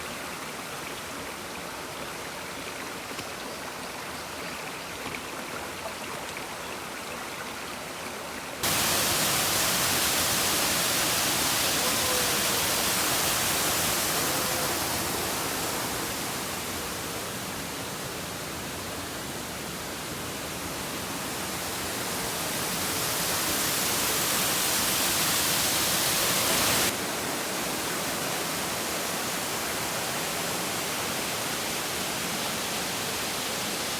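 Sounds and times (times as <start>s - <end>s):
stream rushing over rocks: 0.0s - 33.9s.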